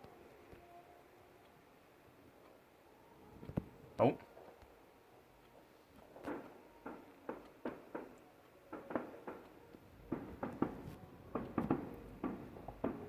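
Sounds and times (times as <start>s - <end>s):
distant fireworks bangs: 6.0s - 13.0s.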